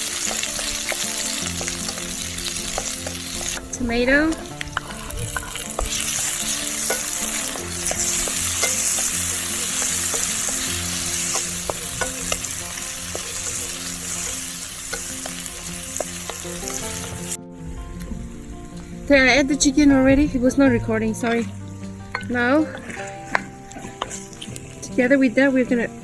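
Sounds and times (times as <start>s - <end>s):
utensil tapping in a pan: 0.0s - 17.3s, 21.3s - 24.7s
food sizzling in oil: 0.0s - 26.0s.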